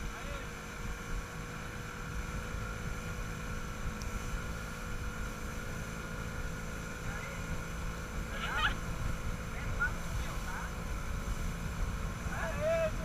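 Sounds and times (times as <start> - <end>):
motorboat engine running: 0.0 - 13.0
rumble of wind and water: 0.0 - 13.0.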